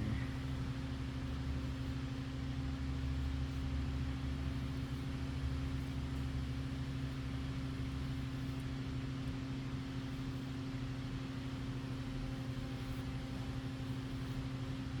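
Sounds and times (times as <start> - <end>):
low machine hum: 0.0 - 0.5.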